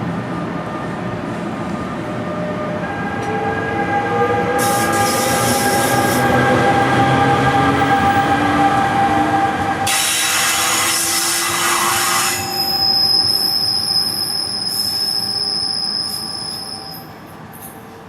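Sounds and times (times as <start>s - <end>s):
train hum: 0.0s - 18.0s
high-pitched squeal: 2.8s - 17.2s
train hiss: 4.6s - 6.8s, 9.8s - 18.0s.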